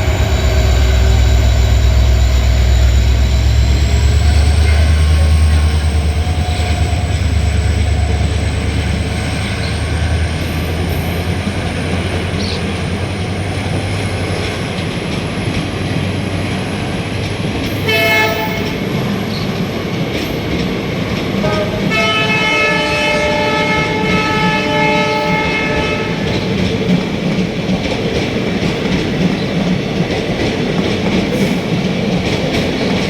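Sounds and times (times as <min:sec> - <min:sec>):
diesel locomotive engine humming: 0:00.0 - 0:33.0
rail rumble: 0:00.0 - 0:33.0
train horn blast: 0:17.8 - 0:18.9, 0:21.4 - 0:26.5.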